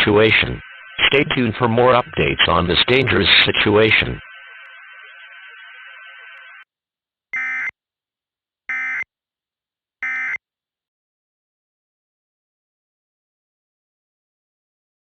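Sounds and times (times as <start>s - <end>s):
harsh digital chirps: 0.0s - 6.6s.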